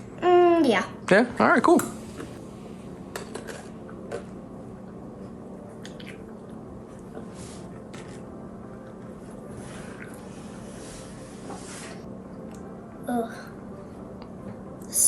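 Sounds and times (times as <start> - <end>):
child chewing crunchy snack: 3.2 - 4.3, 7.8 - 8.3.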